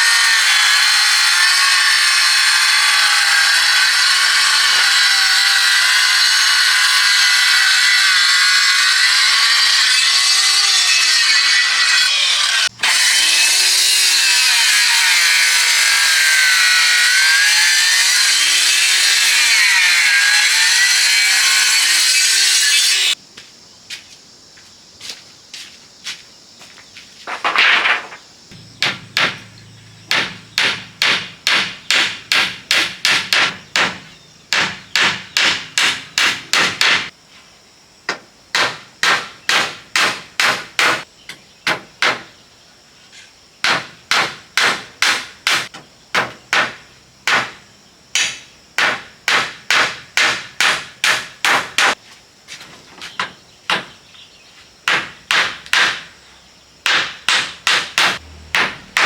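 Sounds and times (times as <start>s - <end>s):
hammer striking wood: 28.8s - 29.5s, 30.1s - 37.1s, 38.1s - 41.0s, 43.6s - 47.6s, 48.2s - 52.0s, 54.9s - 56.1s, 56.8s - 59.0s.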